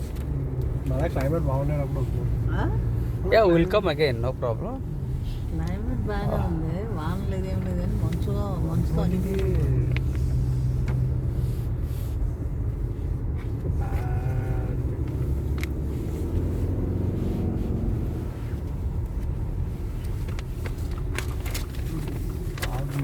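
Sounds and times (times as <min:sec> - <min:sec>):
car driving rumble: 0:00.0 - 0:23.0.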